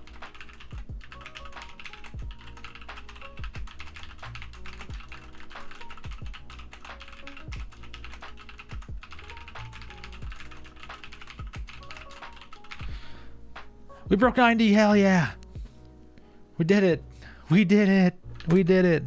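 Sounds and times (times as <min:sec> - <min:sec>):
fast typing on keyboard: 0:00.0 - 0:12.9
lo-fi background music: 0:00.0 - 0:19.0.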